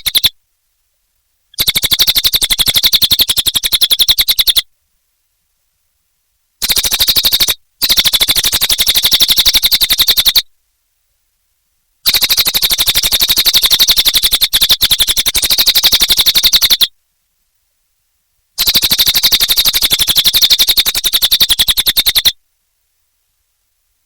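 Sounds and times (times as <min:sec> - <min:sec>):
songbird trilling: 0:00.0 - 0:00.3, 0:01.6 - 0:04.7, 0:06.6 - 0:10.4, 0:12.1 - 0:16.9, 0:18.6 - 0:22.4.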